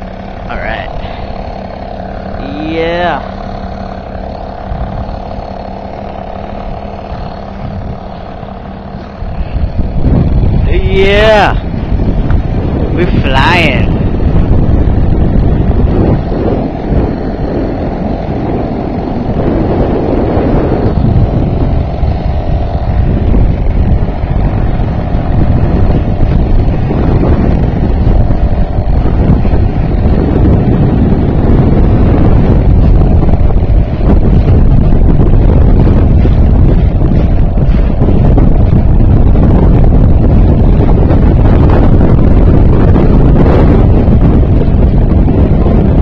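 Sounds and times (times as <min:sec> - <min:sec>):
outboard motor running: 0:00.0 - 0:46.0
wind buffeting microphone: 0:00.0 - 0:46.0.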